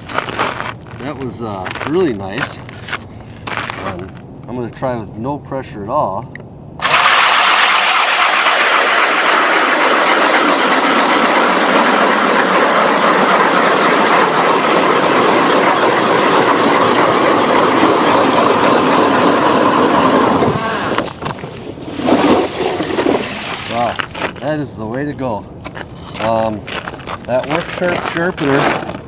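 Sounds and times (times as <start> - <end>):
electric ice auger drilling: 6.8 - 23.8.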